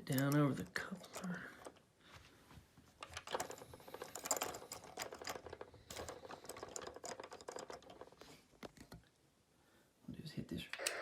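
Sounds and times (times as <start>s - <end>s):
plastic toy train cars clicking: 0.0s - 1.8s, 3.0s - 9.1s.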